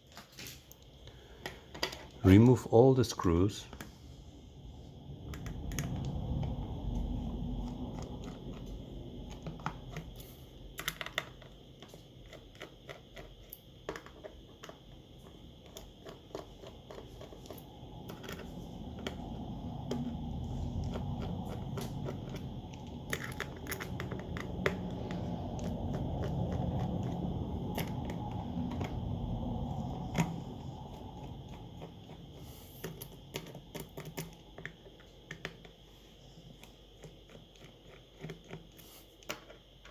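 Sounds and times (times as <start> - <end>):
low rumbling hum: 2.1 - 10.8, 15.0 - 33.4.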